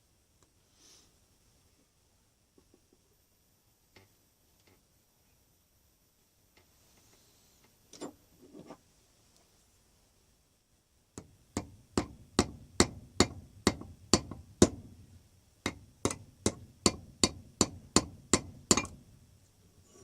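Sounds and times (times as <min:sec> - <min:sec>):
hammer tapping a steel pin: 0:11.2 - 0:15.0, 0:15.6 - 0:19.1.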